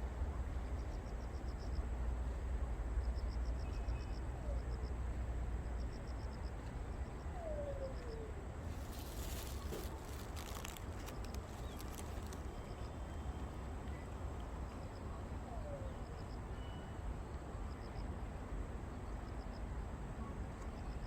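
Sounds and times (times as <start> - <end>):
steady low rumble: 0.0 - 15.6
crackling rustle: 8.6 - 14.0.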